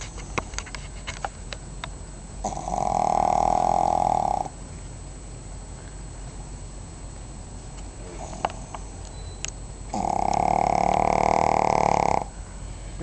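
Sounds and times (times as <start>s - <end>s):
dog snoring: 2.4s - 4.6s, 8.0s - 9.0s, 9.9s - 12.3s
faint clicks and snuffles: 8.2s - 9.1s, 10.0s - 12.2s.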